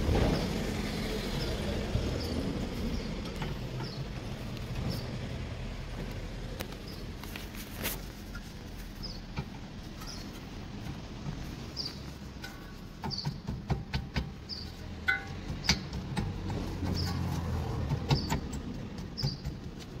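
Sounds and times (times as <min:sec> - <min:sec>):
metallic clicks and knocks: 0:12.3 - 0:20.0.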